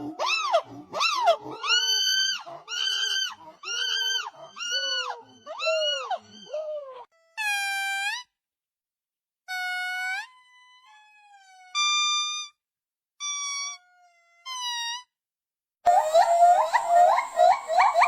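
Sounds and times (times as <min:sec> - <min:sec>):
monkey calling: 0:00.0 - 0:07.0, 0:15.9 - 0:18.0.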